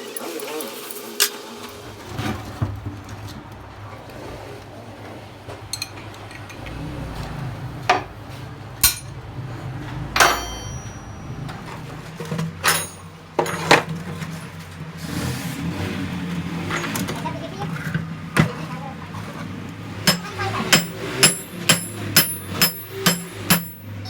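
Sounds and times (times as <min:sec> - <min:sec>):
metal tools clinking: 0:10.2 - 0:14.3, 0:20.1 - 0:24.0.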